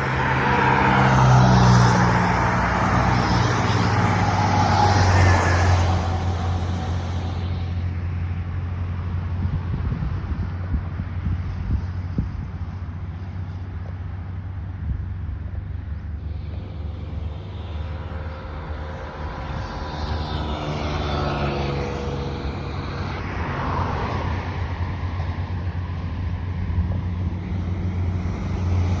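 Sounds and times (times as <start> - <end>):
engine passing by: 0.0 - 29.0
steady low rumble: 5.8 - 29.0.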